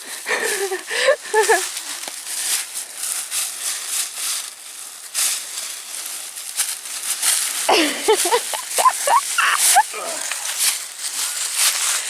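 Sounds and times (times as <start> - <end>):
footsteps on dry leaves: 0.0 - 12.0
short pitch-bending calls: 8.6 - 10.4.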